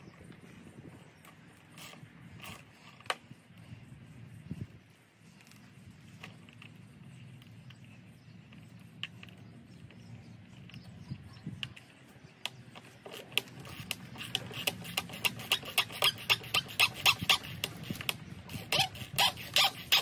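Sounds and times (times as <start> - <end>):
sharp clicks: 11.6 - 20.0.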